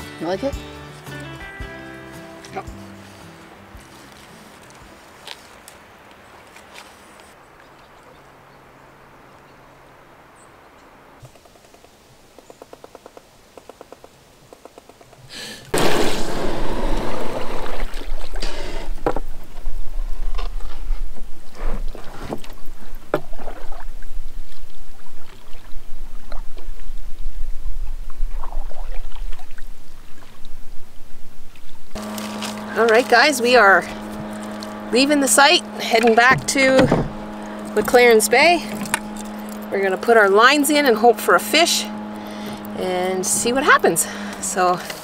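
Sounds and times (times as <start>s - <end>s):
water splashing and sloshing: 15.7s - 45.0s
low rumble: 15.8s - 22.9s.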